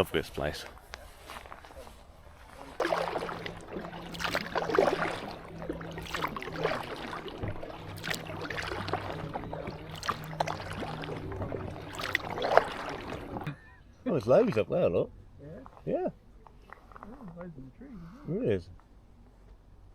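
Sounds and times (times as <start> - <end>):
faint low hum: 0.0 - 19.9
kayak paddle splashing in water: 2.3 - 13.5.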